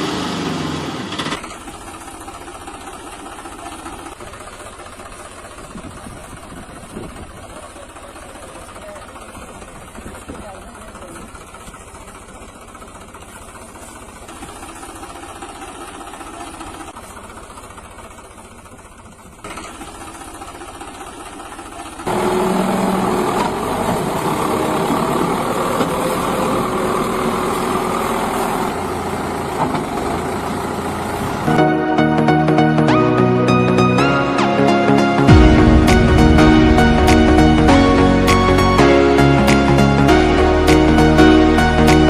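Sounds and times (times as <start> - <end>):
vehicle engine running: 0.0 - 42.0.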